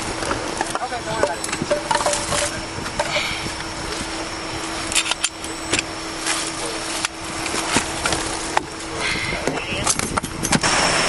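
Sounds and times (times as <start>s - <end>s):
roadside traffic hum: 0.0s - 11.0s.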